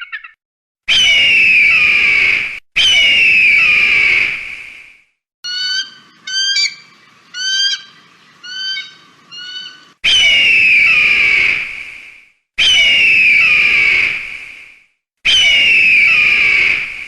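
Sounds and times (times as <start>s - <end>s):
high whistled screams: 0.9s - 4.7s, 5.5s - 11.9s, 12.6s - 14.7s, 15.3s - 17.0s
kite whistled calls: 5.5s - 11.6s, 15.3s - 17.0s.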